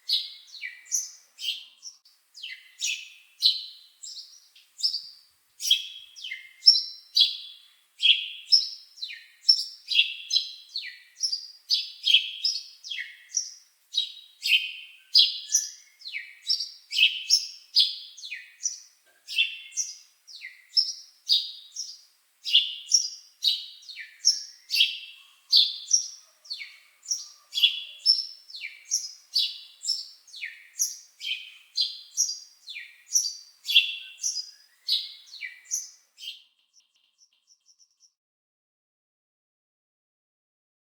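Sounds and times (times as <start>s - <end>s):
bird chirping: 0.0s - 38.2s.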